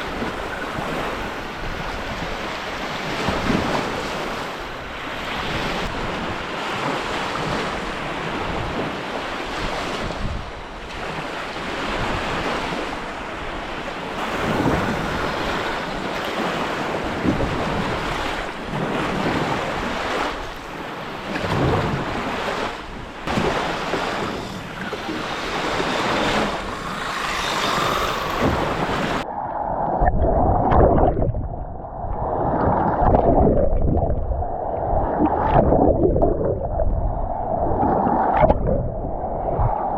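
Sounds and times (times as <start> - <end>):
waves washing on shore: 0.0 - 31.0
wind buffeting microphone: 0.0 - 39.9.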